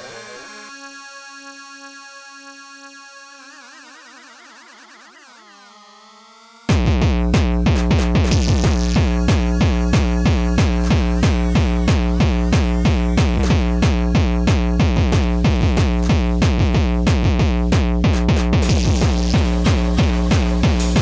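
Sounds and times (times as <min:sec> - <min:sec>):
fast drum machine percussion: 0:06.7 - 0:21.0
heavy synth bass line: 0:06.7 - 0:21.0.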